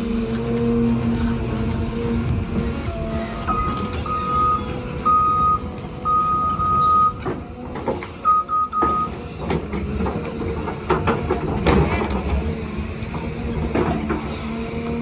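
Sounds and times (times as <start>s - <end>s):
reversing alarm beeping: 0.0s - 7.4s, 8.1s - 9.4s
diesel engine running: 0.0s - 15.0s.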